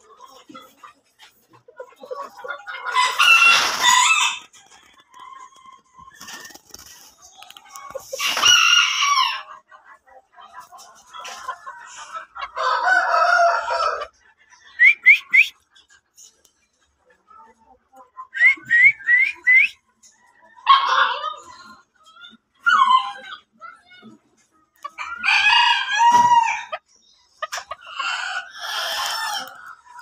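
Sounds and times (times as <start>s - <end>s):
roosters crowing: 2.9s - 4.6s, 8.2s - 9.5s, 12.6s - 14.1s, 25.0s - 26.8s, 27.8s - 29.6s.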